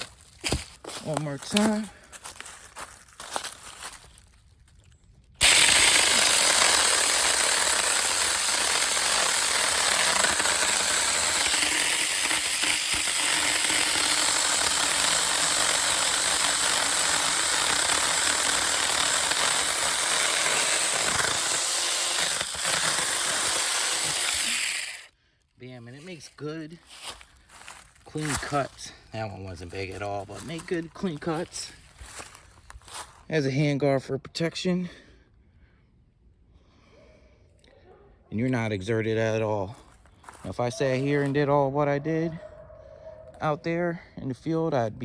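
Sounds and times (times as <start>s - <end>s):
chainsaw cutting tree limb: 0.0s - 2.5s, 5.4s - 25.1s.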